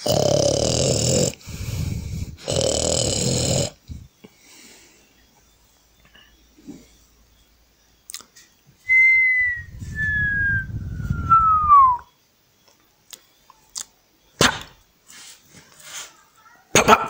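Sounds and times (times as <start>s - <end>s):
whistled tone gliding downward: 8.8s - 12.1s
low rumble: 9.2s - 12.0s.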